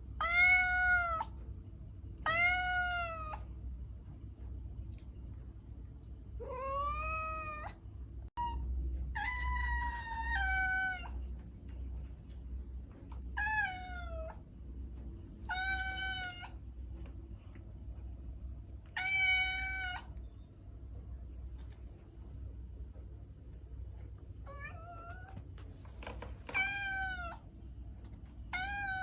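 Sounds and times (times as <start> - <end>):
cat meowing: 0.2 - 1.3, 2.2 - 3.4, 6.4 - 7.8, 9.2 - 11.2, 13.4 - 14.4, 15.5 - 16.6, 18.9 - 20.2, 24.4 - 25.4, 26.5 - 27.4, 28.5 - 29.0.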